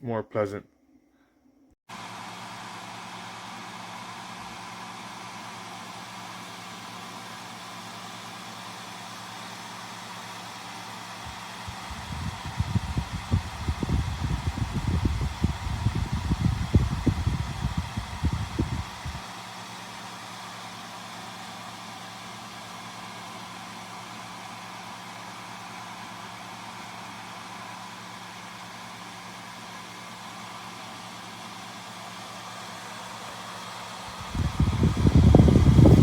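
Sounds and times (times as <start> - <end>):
fan airy hiss: 2.0 - 36.0
faint fan hum: 10.5 - 19.6, 21.4 - 36.0
low rumbling: 34.2 - 36.0.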